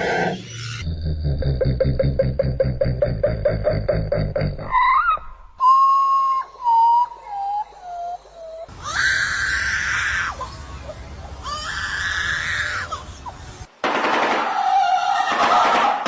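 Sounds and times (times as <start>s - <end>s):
harsh scream-like bird calls: 4.8s - 13.4s, 14.5s - 15.7s.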